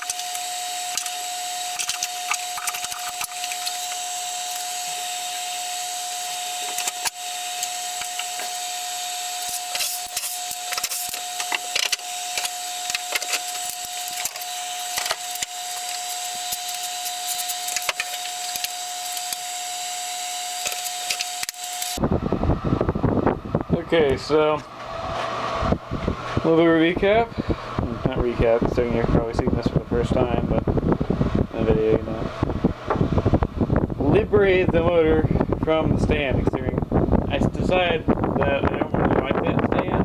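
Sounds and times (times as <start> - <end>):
tools and parts clicking and knocking: 0.0 - 4.7, 6.6 - 8.6, 9.4 - 19.5
steady hum with hiss: 0.0 - 40.0.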